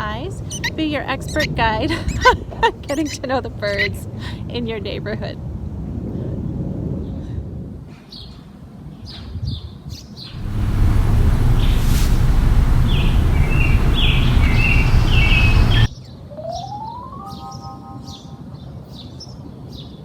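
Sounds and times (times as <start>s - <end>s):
loud low rumbling: 10.4s - 15.9s
songbirds chirping and singing: 10.4s - 15.9s.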